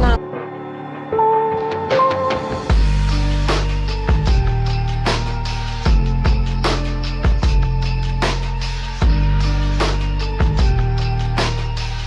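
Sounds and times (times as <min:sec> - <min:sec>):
low bass notes: 0:00.0 - 0:00.2, 0:02.7 - 0:12.0.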